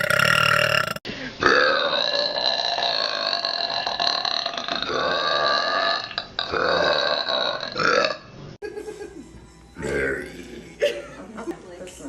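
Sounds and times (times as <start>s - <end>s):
girl burping: 0.0s - 8.2s, 9.8s - 11.0s.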